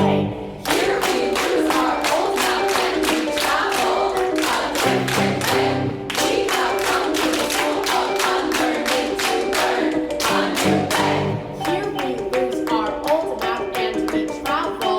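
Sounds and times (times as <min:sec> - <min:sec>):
choir singing held notes: 0:00.0 - 0:11.7.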